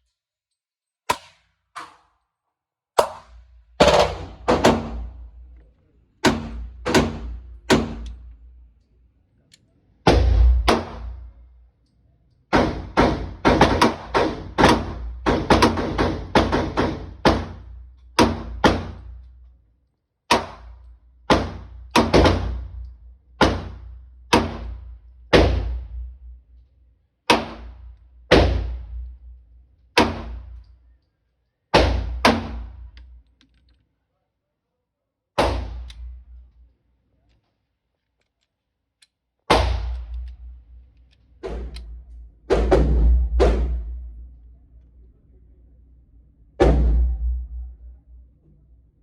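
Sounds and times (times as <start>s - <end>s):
gunshots: 3.0s - 5.2s, 10.1s - 11.3s, 30.0s - 30.6s, 35.4s - 36.2s, 39.5s - 40.2s.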